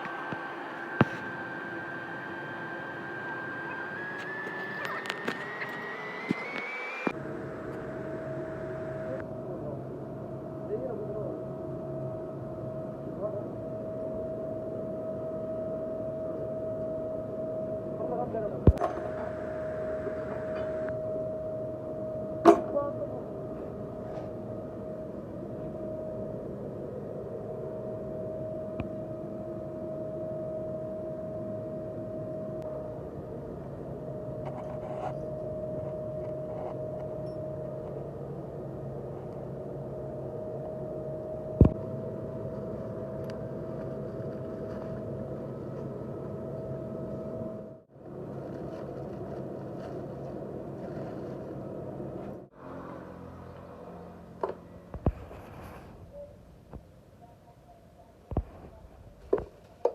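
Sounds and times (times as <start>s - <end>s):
engine running: 0.0s - 11.4s, 18.0s - 29.7s
machine hum with whine: 0.0s - 59.9s.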